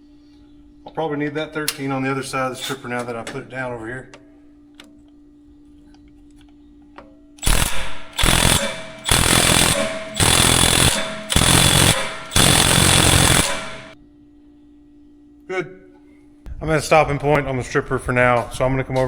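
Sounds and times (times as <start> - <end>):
impact wrench hammering: 7.4 - 14.0.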